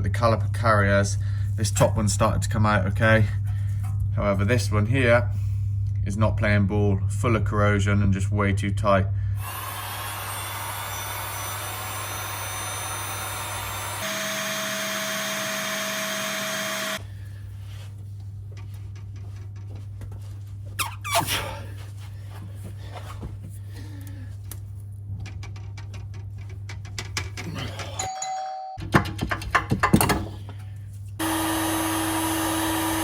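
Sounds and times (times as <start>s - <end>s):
hissing mechanical tool running: 9.4s - 17.0s.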